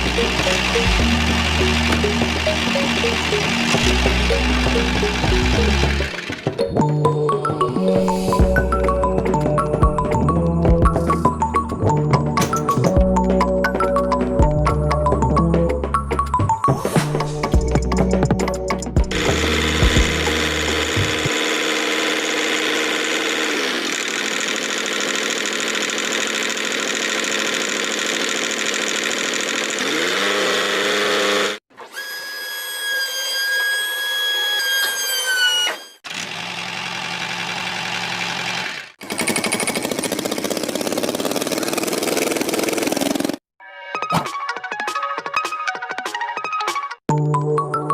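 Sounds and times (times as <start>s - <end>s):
high whine winding down: 0.0s - 7.0s, 19.1s - 23.7s
small motors humming: 0.0s - 7.0s, 19.0s - 43.2s.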